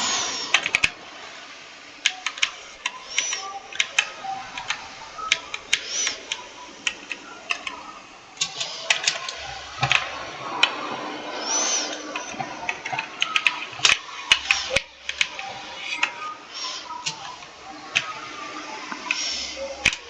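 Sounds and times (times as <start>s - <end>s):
keyboard key clicks: 2.0s - 7.8s.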